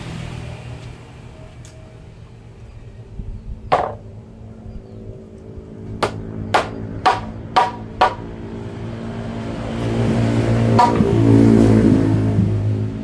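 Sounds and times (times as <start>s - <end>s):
hammer knocking on wood: 3.7s - 4.0s, 6.0s - 8.3s, 10.8s - 11.2s.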